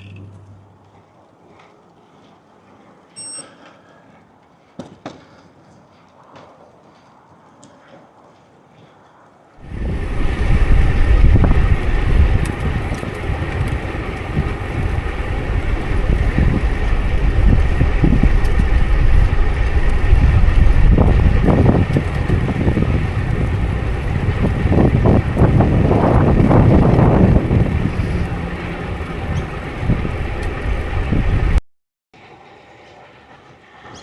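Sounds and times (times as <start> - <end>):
wind buffeting microphone: 5.8 - 31.6.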